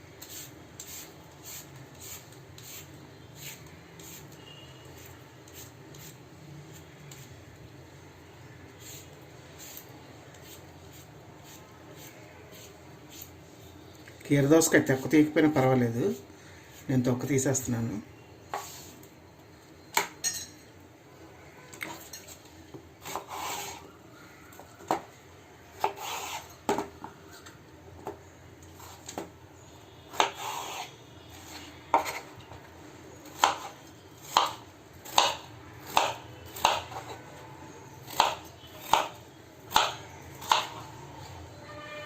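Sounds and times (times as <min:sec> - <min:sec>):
blade scraping cucumber: 0:23.0 - 0:23.8, 0:25.8 - 0:26.6, 0:30.1 - 0:32.3.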